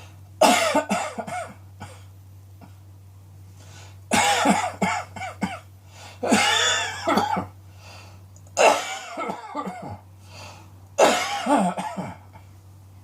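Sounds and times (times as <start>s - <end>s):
steady low hum: 0.0s - 13.0s
person coughing harshly: 0.4s - 2.1s, 4.1s - 7.6s, 8.6s - 10.0s, 11.0s - 12.3s.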